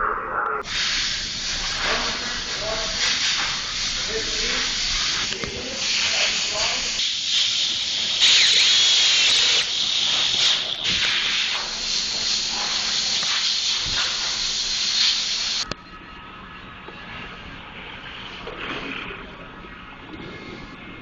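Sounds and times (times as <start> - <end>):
loud steady hiss: 0.6 - 15.7.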